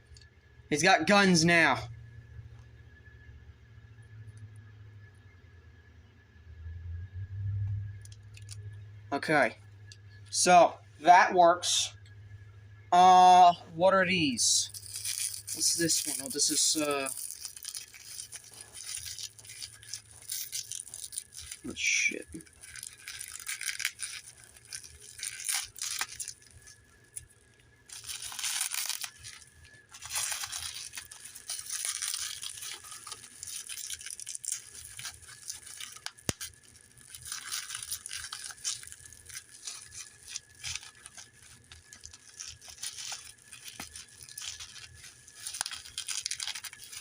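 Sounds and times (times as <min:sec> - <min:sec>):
plastic packaging rustling and tearing: 0:08.0 - 0:08.7, 0:14.2 - 0:47.0.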